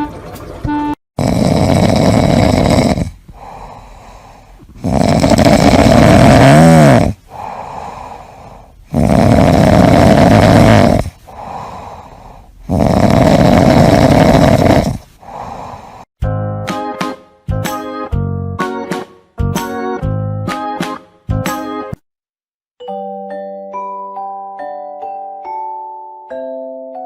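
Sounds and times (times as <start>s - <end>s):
loud snoring: 1.2s - 16.1s.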